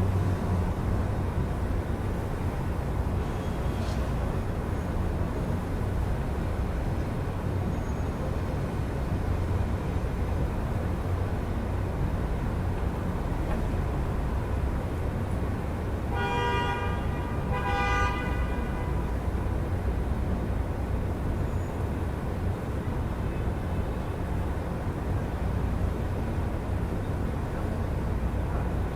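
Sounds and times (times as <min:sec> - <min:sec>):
city traffic rumble: 0:00.0 - 0:28.9
car horn honking: 0:16.1 - 0:19.0.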